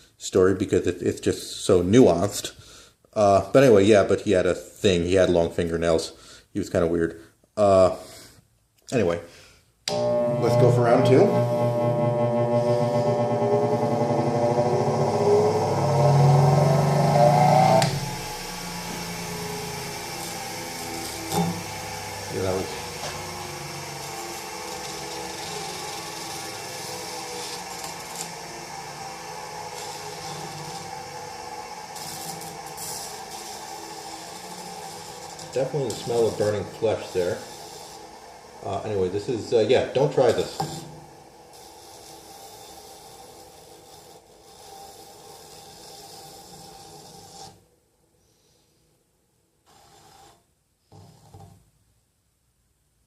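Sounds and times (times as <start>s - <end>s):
bench grinder running: 9.9s - 47.6s.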